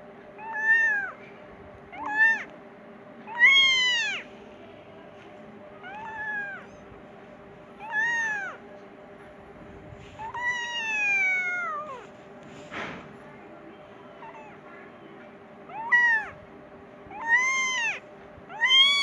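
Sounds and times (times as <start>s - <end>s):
faint steady hum: 0.0s - 19.0s
kitten meowing: 0.4s - 1.2s, 1.9s - 2.5s, 3.3s - 4.3s, 5.8s - 6.8s, 7.8s - 8.6s, 10.2s - 12.1s, 14.2s - 14.6s, 15.7s - 16.4s, 17.1s - 19.0s.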